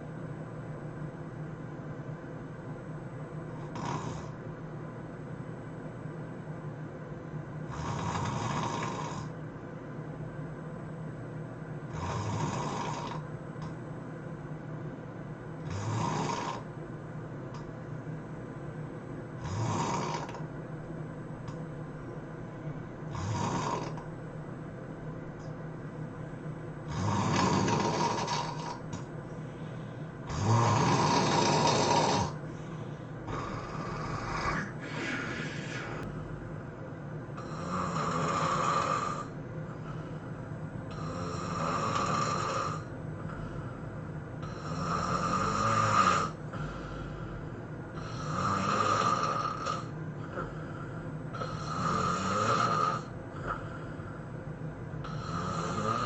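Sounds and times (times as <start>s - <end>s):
steady low hum: 0.0s - 56.0s
person snoring: 3.6s - 4.4s, 7.7s - 9.4s, 11.9s - 13.2s, 15.6s - 16.7s, 19.4s - 20.4s, 23.1s - 24.0s, 26.9s - 28.8s, 30.3s - 36.3s, 37.4s - 40.1s, 40.9s - 43.6s, 44.4s - 54.2s, 55.0s - 56.0s.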